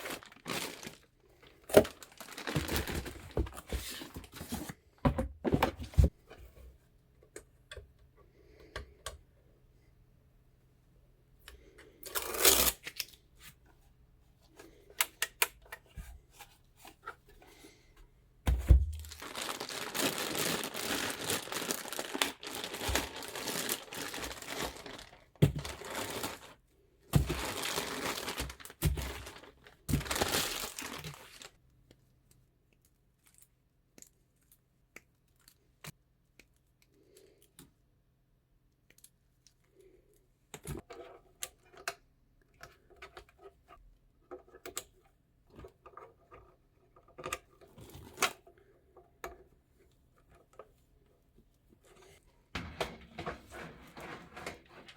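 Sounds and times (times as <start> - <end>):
plastic packaging crinkling: 0.0 - 4.3, 18.9 - 26.6, 27.2 - 31.6.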